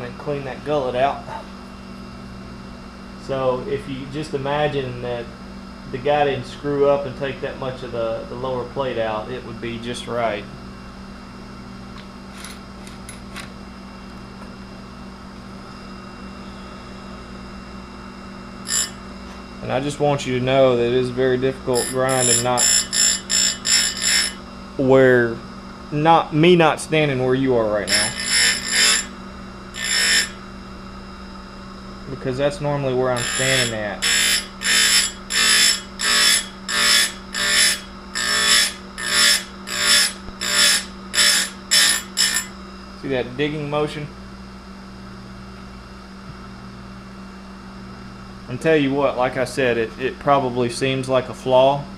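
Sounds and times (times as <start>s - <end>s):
grinder motor humming and whining: 14.2s - 43.2s
grinding wheel hissing on chain: 18.6s - 19.0s, 21.8s - 24.4s, 27.9s - 29.1s, 33.2s - 42.5s.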